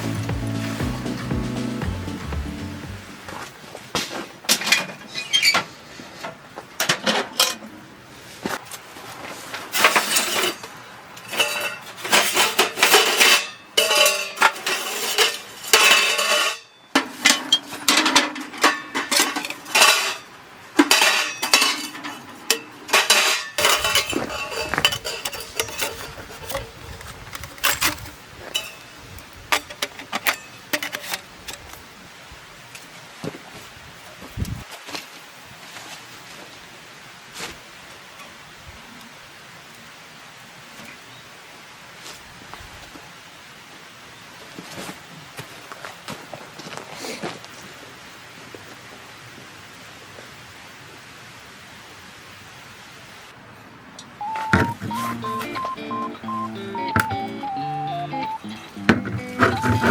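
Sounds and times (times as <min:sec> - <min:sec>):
metal items clinking: 0:11.3 - 0:26.7, 0:59.4 - 0:59.9.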